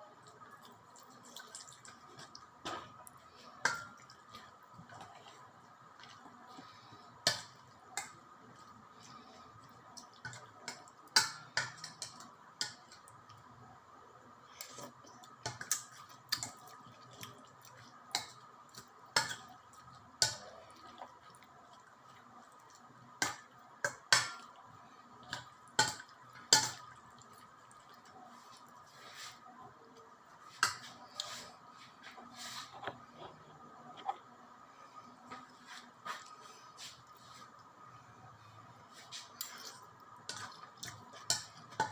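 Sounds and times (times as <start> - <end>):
faint steady hum: 0.0 - 41.9.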